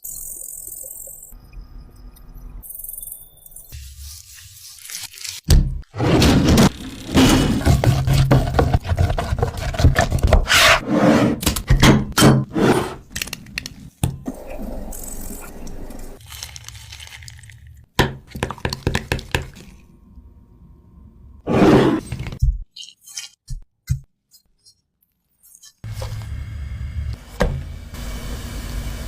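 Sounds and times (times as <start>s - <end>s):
scraping and knocking on hard surface: 7.2s - 11.4s.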